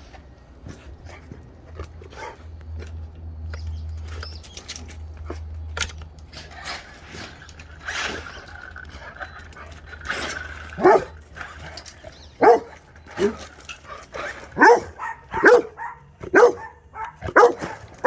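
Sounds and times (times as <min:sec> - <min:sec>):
dog whining: 0:09.2 - 0:11.1, 0:12.4 - 0:18.0
dog scrabbling: 0:09.9 - 0:11.8, 0:12.4 - 0:18.0
dog barking: 0:10.8 - 0:11.2, 0:12.4 - 0:13.4, 0:14.6 - 0:18.0.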